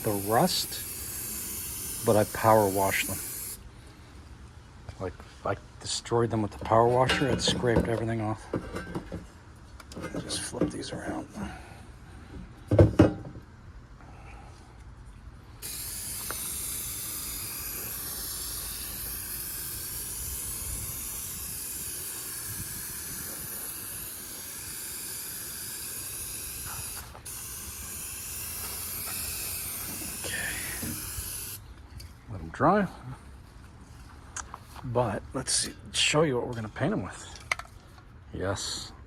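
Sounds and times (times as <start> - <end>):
aerosol can spraying: 0.0 - 3.6, 15.6 - 31.6.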